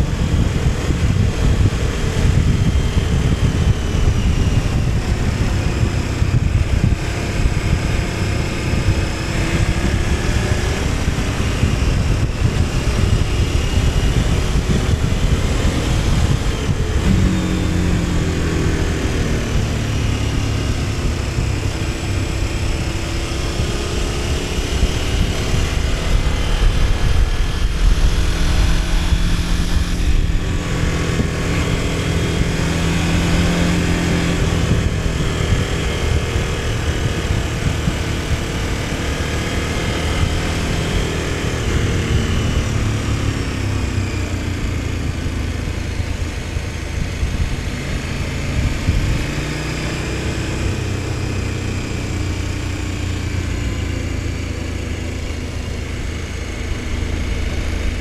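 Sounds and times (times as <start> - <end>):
motorcycle engine running: 0.0 - 58.0
wind and road noise: 0.0 - 58.0.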